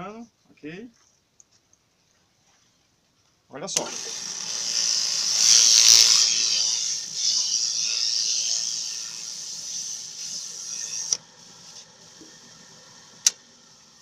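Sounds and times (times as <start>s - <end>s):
sanding machine hiss: 3.8s - 14.0s.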